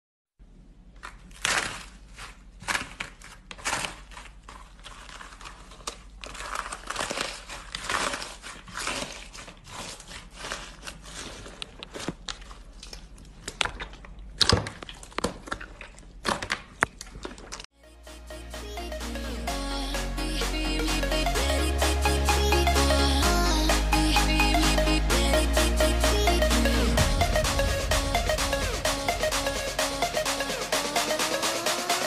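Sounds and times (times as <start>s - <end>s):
slime crackling and squishing: 0.9s - 17.7s
electronic music: 17.8s - 32.0s.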